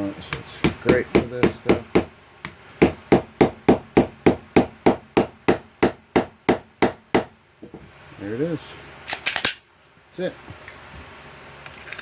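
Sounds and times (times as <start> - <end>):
hammer tapping metal pin: 0.3 - 7.8.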